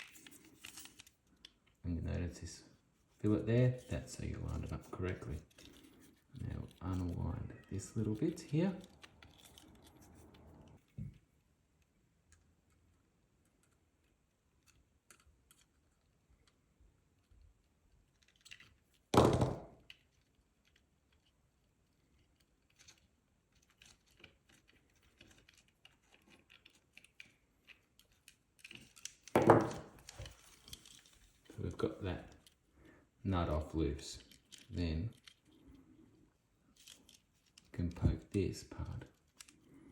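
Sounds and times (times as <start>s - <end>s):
small parts clicking and tapping: 0.0s - 1.8s, 3.8s - 33.0s, 34.0s - 39.9s
thunk: 19.2s - 19.7s, 29.4s - 29.8s.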